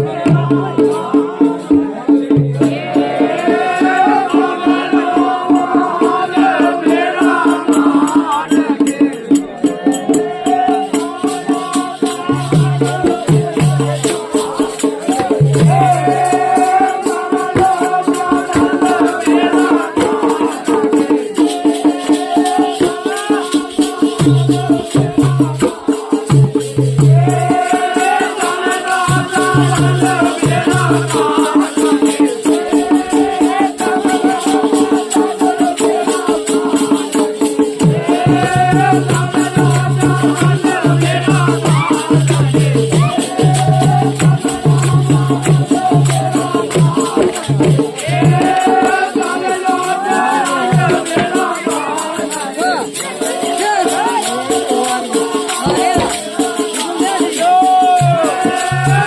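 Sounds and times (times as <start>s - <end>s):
fast rattling beat: 0.0s - 59.0s
person singing: 0.0s - 59.0s.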